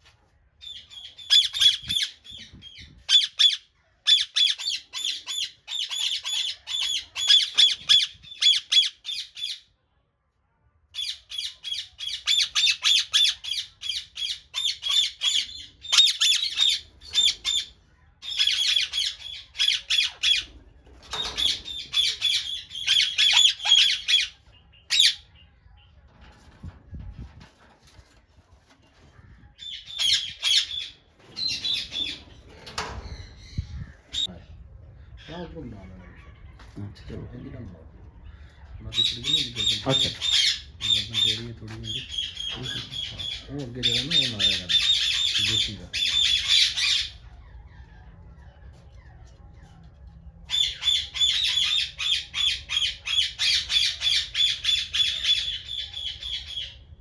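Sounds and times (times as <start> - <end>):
bird squawking: 38.9 - 47.8.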